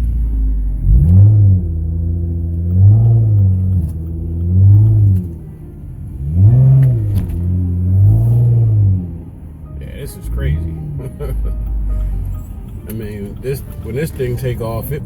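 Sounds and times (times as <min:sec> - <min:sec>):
moving car rumble: 0:00.0 - 0:15.0
music with sliding bass: 0:00.0 - 0:15.0.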